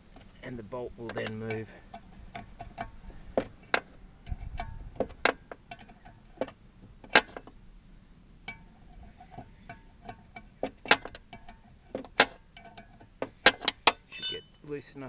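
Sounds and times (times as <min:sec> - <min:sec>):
spanner clicking on metal bolt: 0:09.7 - 0:14.6.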